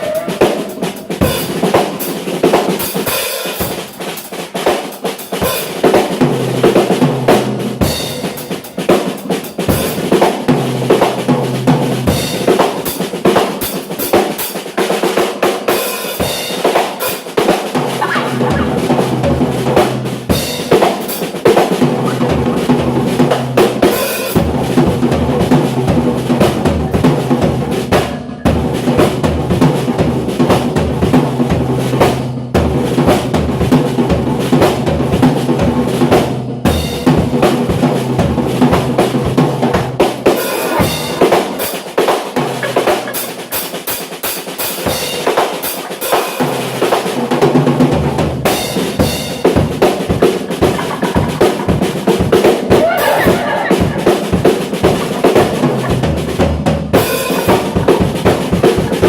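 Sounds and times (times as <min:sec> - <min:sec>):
live rock band playing: 0:00.0 - 0:31.1, 0:36.8 - 0:47.2, 0:48.2 - 0:59.0
drum rolls: 0:00.0 - 0:59.0
bass drum and snare hits: 0:17.4 - 0:43.7, 0:46.5 - 0:59.0
bass guitar line: 0:17.9 - 0:20.6, 0:21.8 - 0:23.9.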